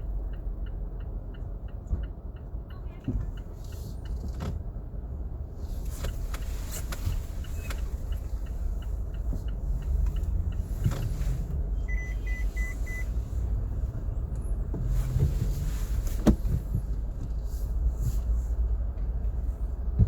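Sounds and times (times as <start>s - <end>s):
car road and engine rumble: 0.0s - 20.0s
short beeps: 11.8s - 13.2s.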